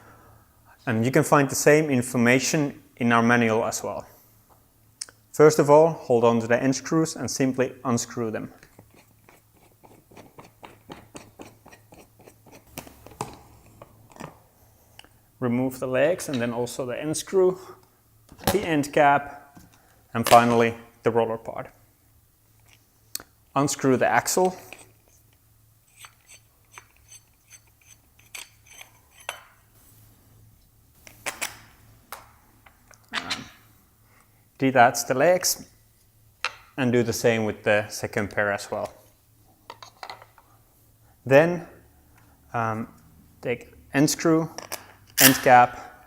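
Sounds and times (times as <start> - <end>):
screws unscrewing clicks and scrapes: 25.9 - 29.6.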